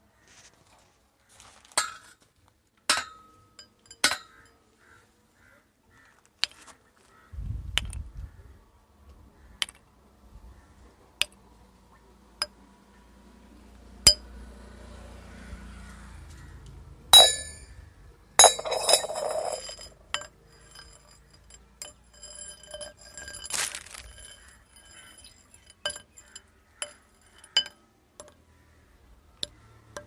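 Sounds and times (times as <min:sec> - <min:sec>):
metal rods clinking: 0:17.2 - 0:17.8, 0:18.4 - 0:28.4.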